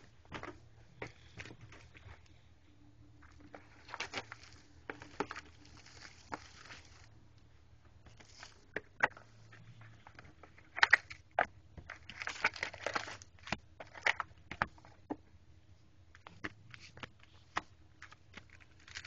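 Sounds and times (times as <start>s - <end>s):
wrapper crinkling and tearing: 3.8s - 7.1s, 12.0s - 14.2s, 18.4s - 19.0s.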